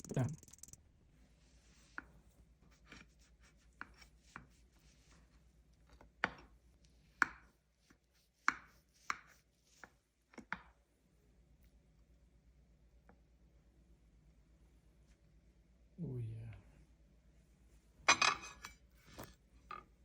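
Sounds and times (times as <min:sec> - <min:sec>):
kitchen utensils knocking: 0:18.1 - 0:18.6.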